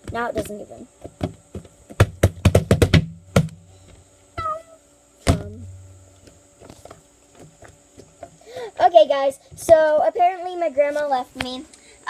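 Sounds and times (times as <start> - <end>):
slime squeak: 4.4 - 4.8
loud slime thunk: 5.3 - 5.8.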